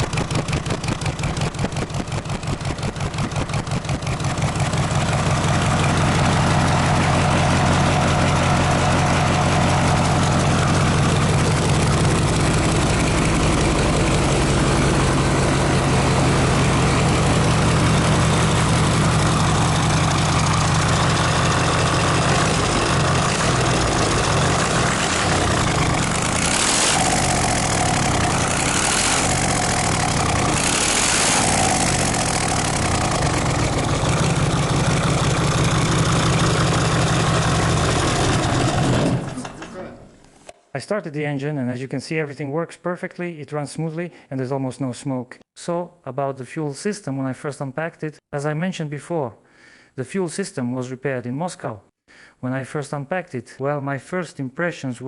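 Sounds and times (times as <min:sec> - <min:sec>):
diesel engine idling: 0:00.0 - 0:39.6.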